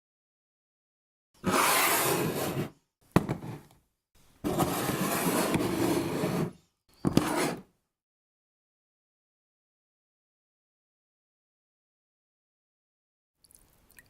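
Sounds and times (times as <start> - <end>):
short sharp scrape: 1.4 - 3.7, 4.4 - 7.7.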